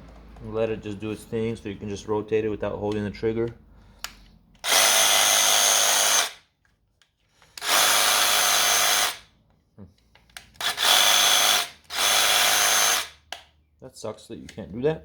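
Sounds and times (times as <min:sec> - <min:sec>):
cordless jigsaw bursts: 0:04.6 - 0:06.4, 0:07.6 - 0:09.3, 0:10.6 - 0:13.2.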